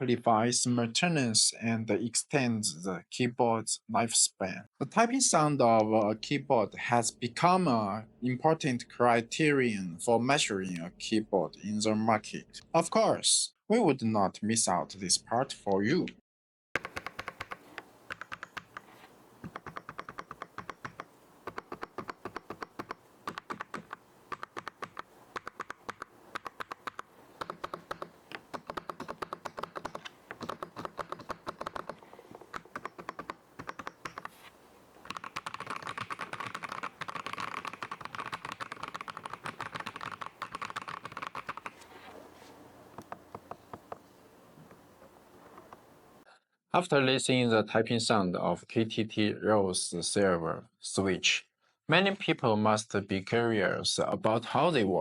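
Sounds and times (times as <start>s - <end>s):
mechanical keyboard typing: 16.8s - 42.0s.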